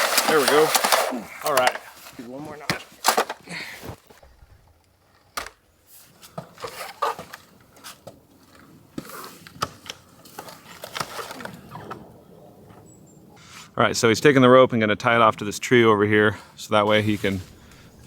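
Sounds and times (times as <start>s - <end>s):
extension ladder knocks and clicks: 0.0s - 2.0s, 2.6s - 4.0s.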